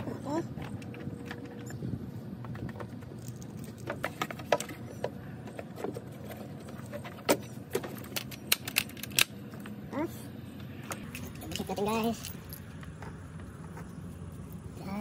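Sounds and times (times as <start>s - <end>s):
metal tools clinking: 10.9s - 13.1s.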